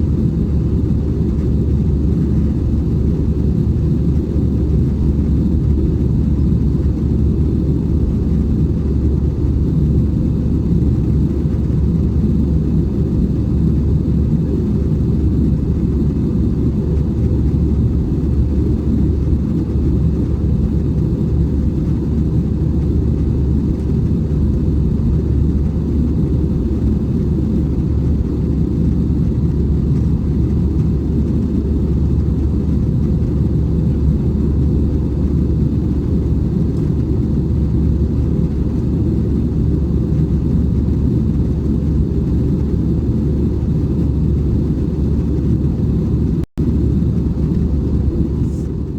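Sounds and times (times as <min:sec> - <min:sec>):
airliner cabin rumble: 0:00.0 - 0:48.9.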